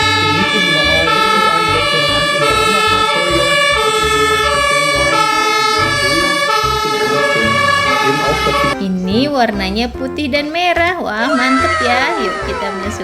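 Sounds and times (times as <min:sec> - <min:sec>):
electronic two-tone siren: 0:00.0 - 0:08.8
low pulsing beat: 0:00.0 - 0:09.8.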